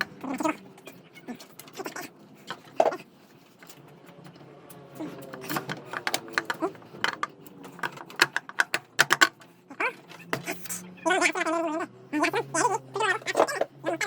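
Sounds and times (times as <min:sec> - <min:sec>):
hand tools clicking and knocking: 0:03.6 - 0:10.8.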